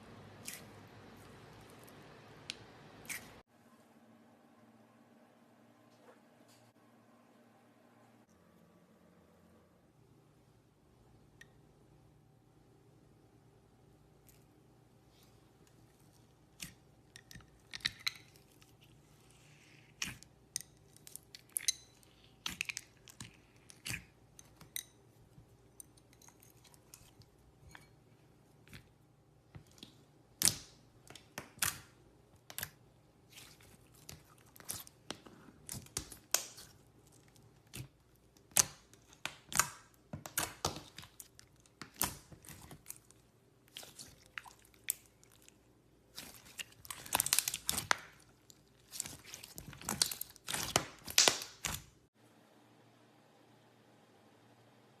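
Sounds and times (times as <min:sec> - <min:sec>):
slime clicking and crackling: 0:29.6 - 0:51.9.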